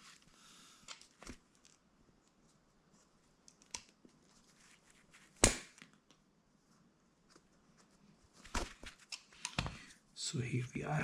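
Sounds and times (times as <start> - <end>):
soft rustles: 4.0 - 5.4, 6.6 - 10.0.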